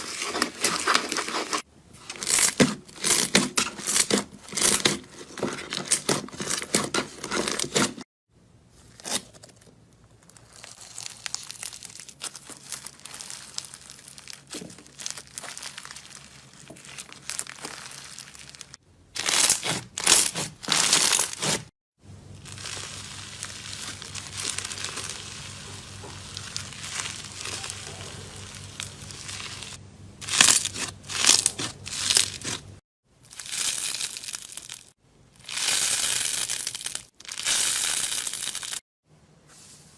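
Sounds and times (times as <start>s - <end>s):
slime crackling: 10.2s - 21.7s, 22.4s - 38.8s.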